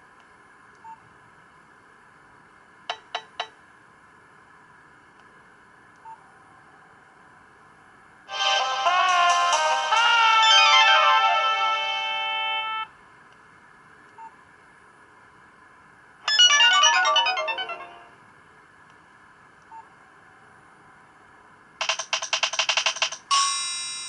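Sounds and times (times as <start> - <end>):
descending run of notes: 8.3 - 12.8, 16.3 - 18.1
polyphonic phone ringtones: 8.3 - 12.8, 16.3 - 18.2
held synth chord: 8.3 - 12.9, 16.3 - 18.2.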